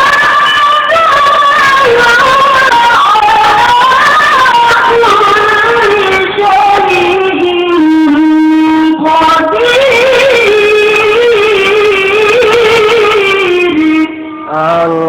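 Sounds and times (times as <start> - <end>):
solo voice chanting recitation: 5.5 - 15.0.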